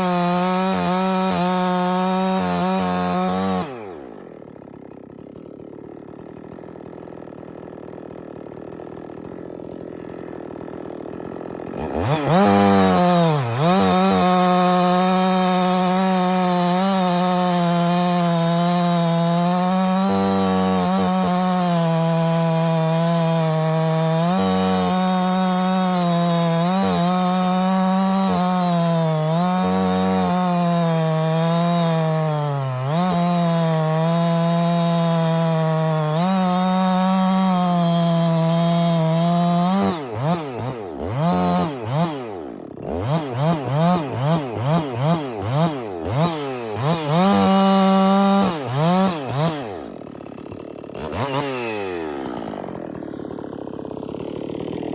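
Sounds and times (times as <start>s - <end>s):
chainsaw cutting log: 0.0s - 54.9s
chainsaw engine revving: 0.0s - 54.9s.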